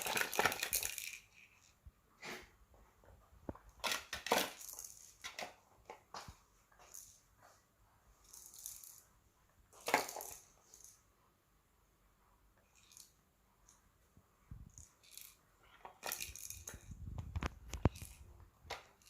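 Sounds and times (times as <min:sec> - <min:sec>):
plastic rattle toys rattling: 0:00.0 - 0:01.8, 0:03.8 - 0:05.6, 0:08.2 - 0:09.1, 0:09.8 - 0:11.0, 0:12.7 - 0:13.2, 0:14.7 - 0:19.0.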